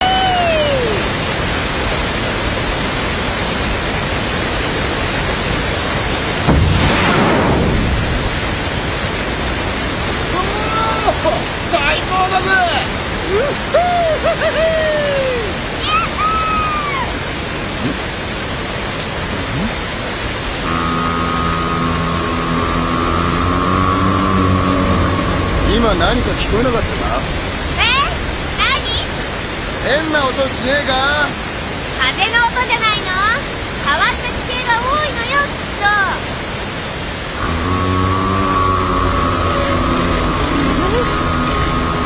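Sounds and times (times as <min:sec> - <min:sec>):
short falling cry: 0:00.0 - 0:01.3, 0:13.2 - 0:18.0, 0:20.6 - 0:29.2, 0:37.4 - 0:42.0
steady rushing noise: 0:00.4 - 0:42.0
wind rushing: 0:06.1 - 0:10.5, 0:21.9 - 0:30.2
multi-pitched droning tone: 0:20.6 - 0:29.5, 0:37.4 - 0:42.0.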